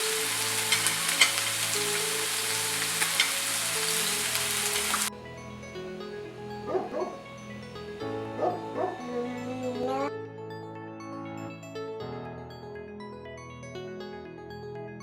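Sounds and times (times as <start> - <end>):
meat sizzling on a grill: 0.0 - 5.1
background music: 0.0 - 15.0.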